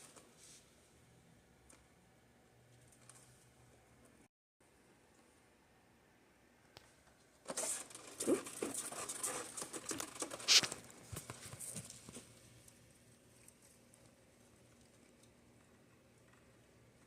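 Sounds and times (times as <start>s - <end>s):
pet scratching in a box: 7.5s - 10.8s
sharp scrape on a box: 10.4s - 10.7s.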